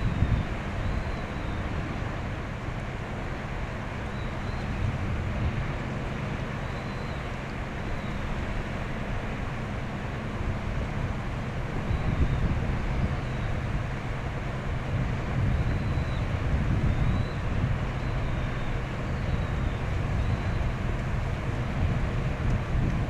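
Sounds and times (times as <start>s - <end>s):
faint high whistles: 0.0s - 1.7s, 6.6s - 7.3s, 11.9s - 13.6s, 15.5s - 17.4s, 18.0s - 20.7s
wind on microphone: 0.0s - 3.0s, 3.9s - 7.0s, 10.2s - 23.0s
ship diesel engine rumble: 0.0s - 23.0s.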